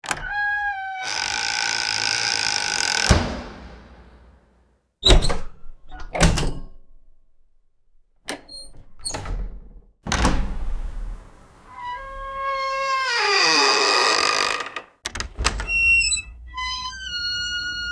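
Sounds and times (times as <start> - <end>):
door creaking: 0.0 - 3.8, 8.3 - 17.9.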